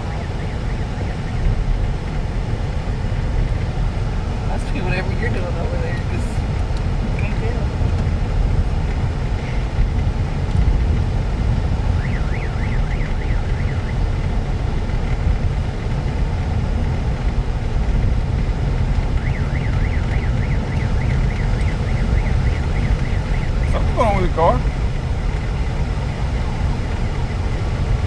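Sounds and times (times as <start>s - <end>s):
road and engine rumble: 0.0s - 28.0s
warbling alarm siren: 11.6s - 14.9s, 19.0s - 28.0s.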